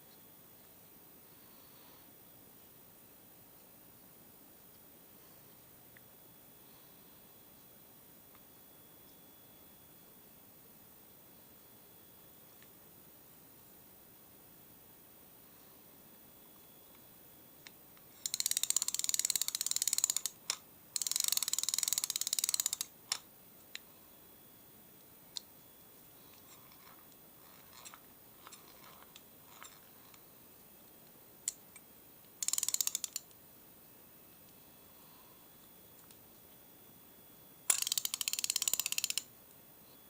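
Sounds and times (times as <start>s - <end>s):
fishing reel ratchety clicking: 18.2s - 22.9s, 32.4s - 33.2s, 37.7s - 39.3s.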